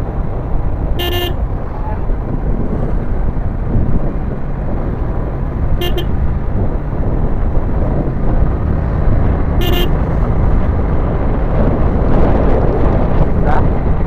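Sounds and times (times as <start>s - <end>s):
motorcycle engine running: 0.0s - 14.0s
wind rush: 0.0s - 14.0s
vehicle horn beep: 1.0s - 2.1s, 5.8s - 6.2s, 9.6s - 10.0s.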